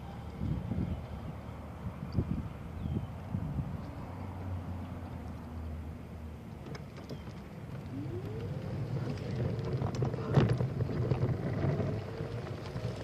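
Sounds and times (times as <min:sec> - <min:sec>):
wind on microphone: 0:00.2 - 0:04.0
bicycle tyres and frame rattling: 0:06.6 - 0:13.0
whine: 0:07.8 - 0:10.8.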